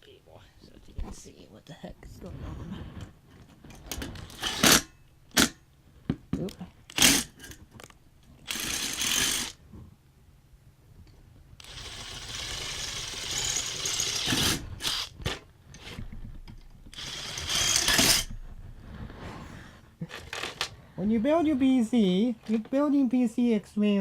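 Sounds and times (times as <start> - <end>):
power drill running: 4.3 - 4.8, 8.5 - 9.6, 11.6 - 15.1, 16.9 - 18.3.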